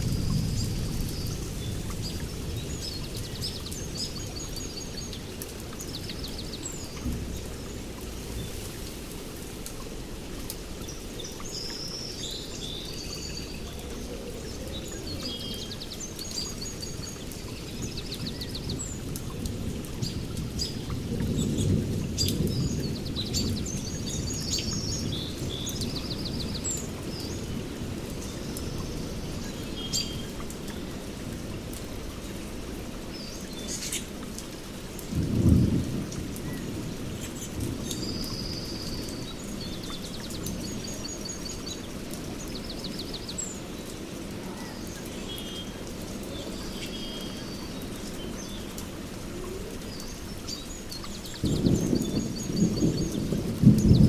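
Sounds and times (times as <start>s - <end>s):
distant thunder rumbling: 0.0s - 4.2s, 35.1s - 39.4s, 50.9s - 54.0s
steady rain: 0.0s - 54.0s
birds calling and trilling: 33.0s - 35.8s, 36.4s - 54.0s.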